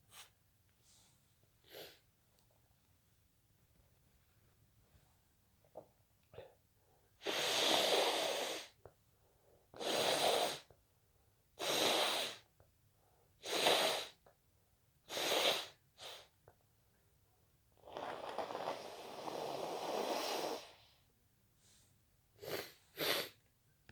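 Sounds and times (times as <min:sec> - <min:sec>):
person sneezing: 0:22.4 - 0:23.4.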